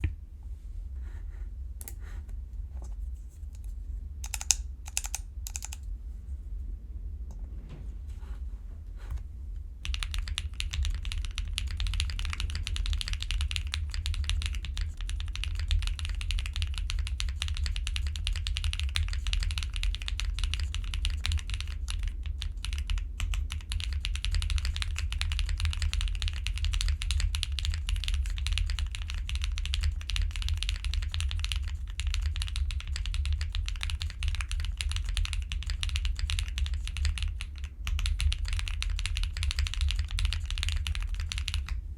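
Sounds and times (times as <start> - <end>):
steady low rumble: 0.0 - 14.2
typing on mechanical keyboard: 4.2 - 5.8, 9.8 - 41.8.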